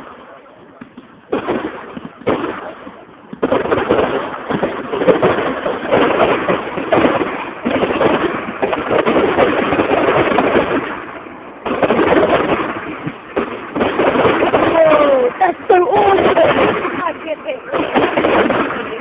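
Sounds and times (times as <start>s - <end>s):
fireworks bangs and crackling: 0.0s - 19.0s.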